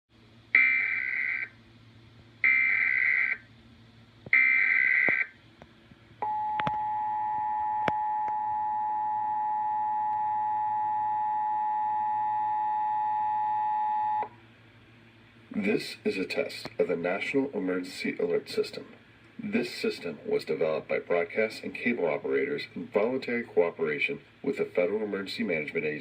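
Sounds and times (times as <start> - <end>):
two-tone attention signal: 6.2 - 14.3.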